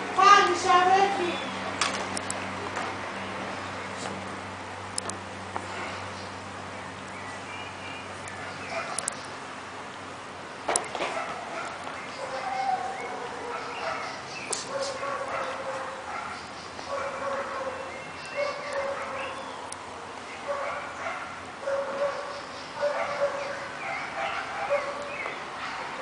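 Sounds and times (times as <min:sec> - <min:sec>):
dog whining and yipping: 0:11.2 - 0:14.1.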